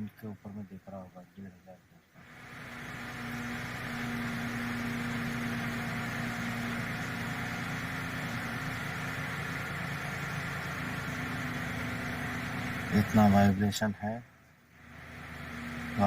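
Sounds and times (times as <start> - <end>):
car engine fast idling: 2.1 - 16.0.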